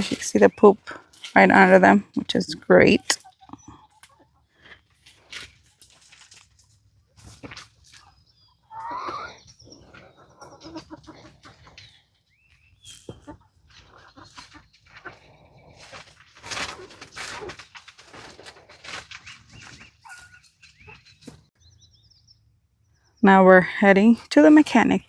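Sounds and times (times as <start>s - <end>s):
hens clucking: 0.0s - 6.0s, 7.5s - 21.4s
rustling: 4.6s - 8.1s, 12.9s - 21.5s
hen squawking: 8.7s - 11.6s.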